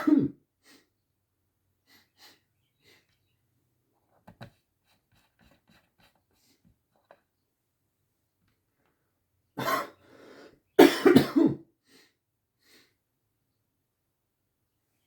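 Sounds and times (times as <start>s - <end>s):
man sneezing: 0.0s - 0.4s.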